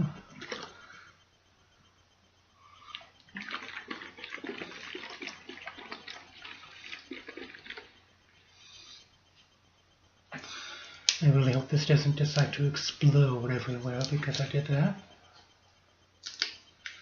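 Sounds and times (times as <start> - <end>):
liquid sloshing in shaken bottle: 2.9 - 7.9.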